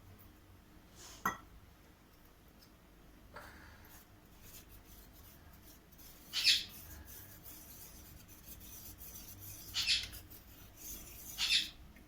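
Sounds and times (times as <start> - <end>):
spoon scraping while stirring: 4.3 - 11.8.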